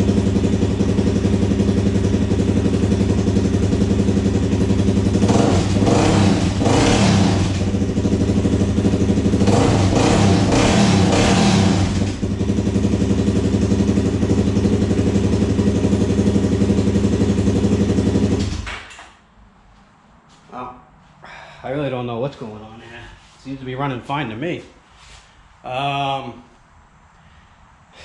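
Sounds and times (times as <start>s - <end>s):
atv engine revving: 0.0s - 18.7s.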